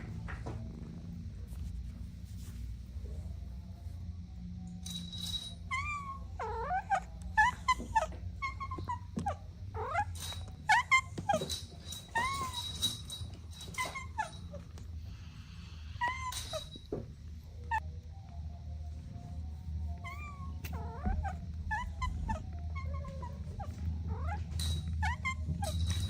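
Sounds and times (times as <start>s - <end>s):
kittens mewing: 5.7s - 17.0s, 19.9s - 26.0s.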